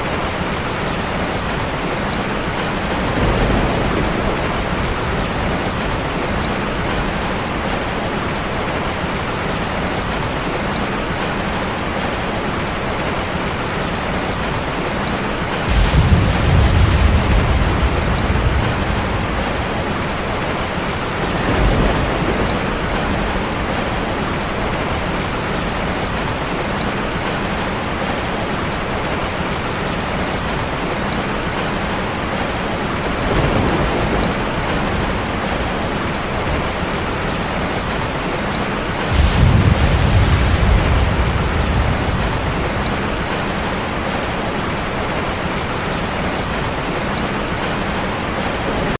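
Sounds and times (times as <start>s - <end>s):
steady rain: 0.0s - 48.9s
thunder rumbling: 0.7s - 9.8s, 15.6s - 28.2s, 32.3s - 45.7s.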